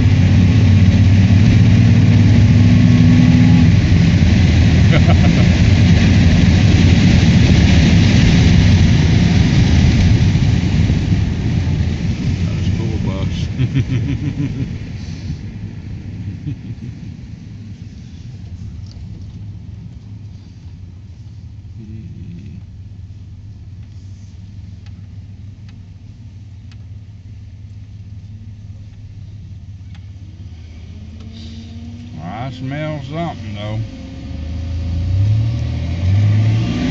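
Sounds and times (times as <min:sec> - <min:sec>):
engine and drivetrain rumble: 0:00.0 - 0:36.9
road and wind noise: 0:00.0 - 0:36.9.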